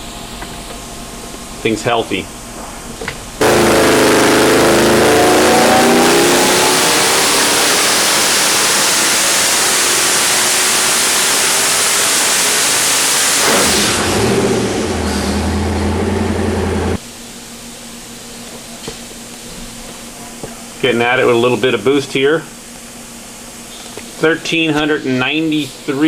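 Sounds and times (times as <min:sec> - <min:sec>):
engine revving at full throttle: 0:03.4 - 0:17.0
rush of exhaust and turbo: 0:03.4 - 0:17.0.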